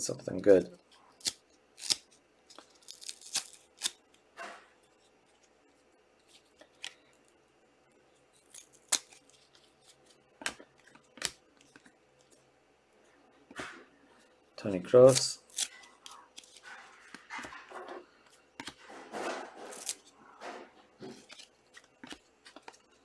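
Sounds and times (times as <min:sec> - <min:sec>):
foil packs crinkling: 0:02.6 - 0:04.0.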